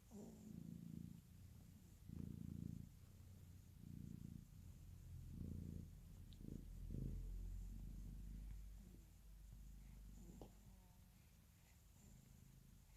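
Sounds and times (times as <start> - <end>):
cat purring: 0.0 - 12.9.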